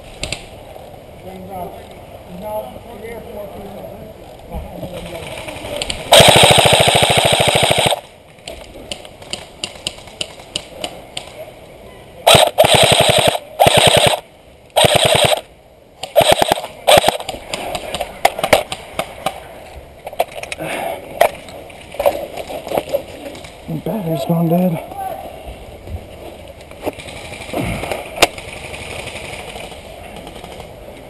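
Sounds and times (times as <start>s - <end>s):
airsoft gun automatic bursts: 5.2s - 8.1s, 12.3s - 14.2s, 14.8s - 17.4s, 27.0s - 30.7s
single airsoft shots: 12.3s - 14.2s, 14.8s - 15.4s, 16.0s - 17.4s.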